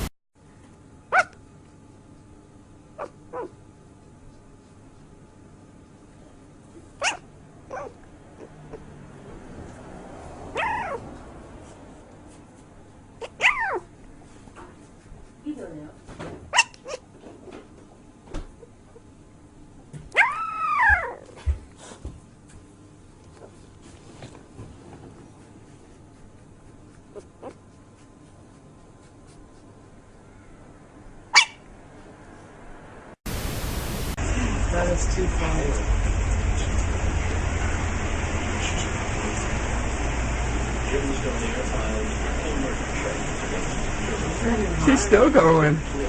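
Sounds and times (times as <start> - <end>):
puppy yipping in sleep: 1.1 - 1.4, 3.0 - 3.6, 7.0 - 8.5, 10.5 - 11.1, 13.2 - 14.0, 16.5 - 17.1, 20.1 - 21.4, 27.0 - 28.1, 31.3 - 31.7
dog whimpering: 7.0 - 8.8, 10.5 - 11.0, 13.2 - 13.9, 20.2 - 21.4.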